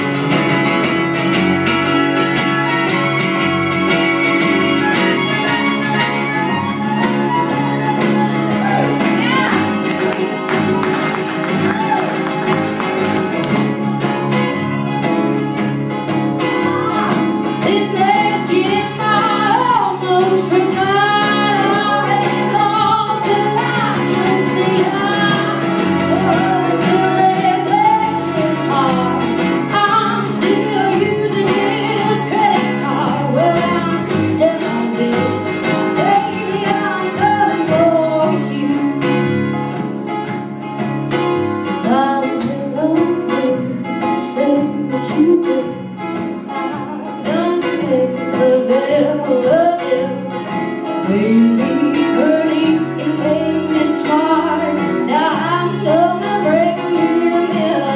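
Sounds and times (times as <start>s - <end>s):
plucked acoustic guitar: 0.0s - 57.9s
woman singing: 16.5s - 39.5s, 41.7s - 57.9s.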